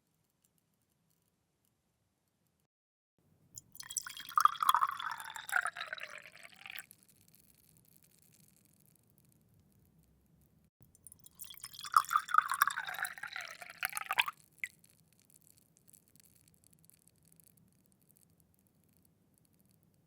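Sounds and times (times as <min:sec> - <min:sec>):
faint water drips: 0:03.6 - 0:06.8, 0:10.8 - 0:14.7
water poured into a glass: 0:03.6 - 0:06.8, 0:11.0 - 0:14.7.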